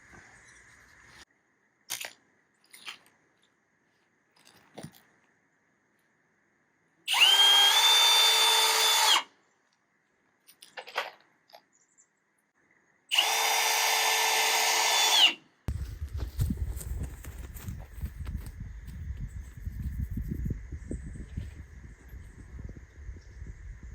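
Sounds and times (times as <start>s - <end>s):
electric drill whining: 7.1s - 9.3s, 13.1s - 15.4s.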